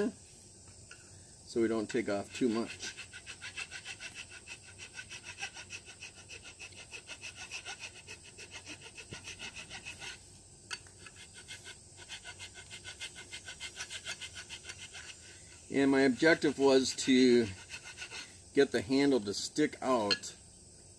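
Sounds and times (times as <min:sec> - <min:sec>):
rasp filing wood: 0:01.9 - 0:10.3, 0:10.9 - 0:18.4.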